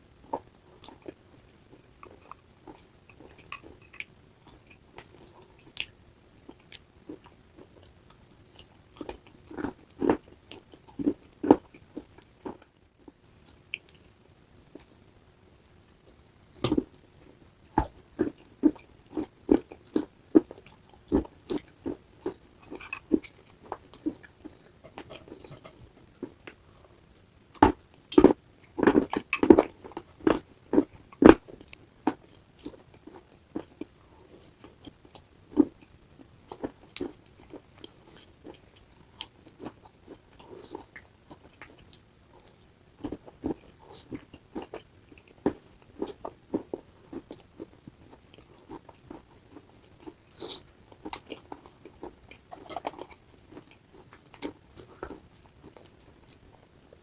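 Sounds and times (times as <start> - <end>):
chewing crunchy clay: 16.6 - 56.7.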